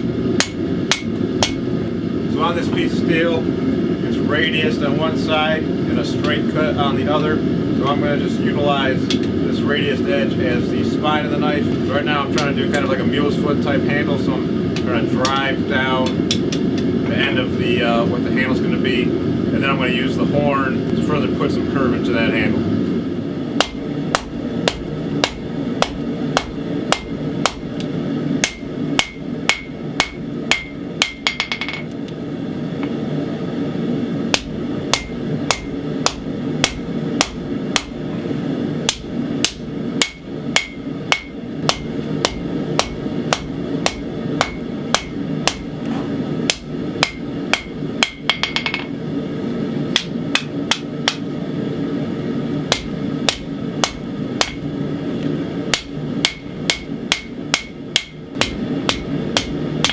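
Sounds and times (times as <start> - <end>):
hammer ringing on anvil: 28.4 - 31.8, 34.4 - 37.9, 38.9 - 45.6, 46.5 - 48.9, 52.7 - 54.6, 55.8 - 59.9.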